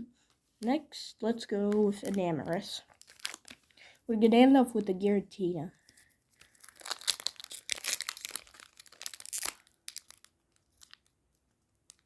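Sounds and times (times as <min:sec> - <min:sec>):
foil wrapper crinkling and tearing: 0:01.6 - 0:03.7, 0:05.8 - 0:12.0.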